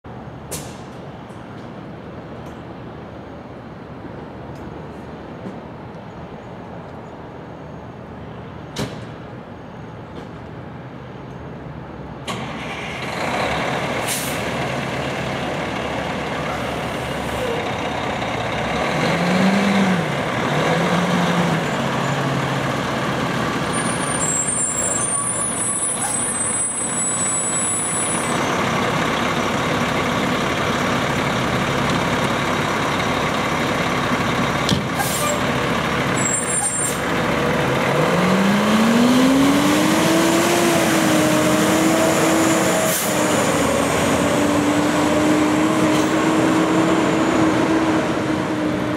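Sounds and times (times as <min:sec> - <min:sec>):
fire engine diesel engine: 0:00.1 - 0:48.9
air brakes hissing: 0:14.0 - 0:14.5, 0:34.9 - 0:35.4.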